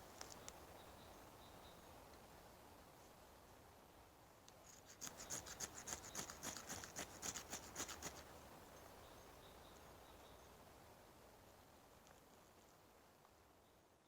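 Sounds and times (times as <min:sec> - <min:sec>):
faint outdoor background: 0:00.0 - 0:14.0
quick rhythmic scraping: 0:04.7 - 0:08.3.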